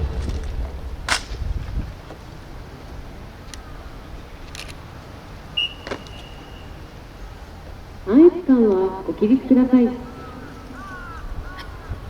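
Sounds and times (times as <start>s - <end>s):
drum beat echo: 0.0s - 2.4s.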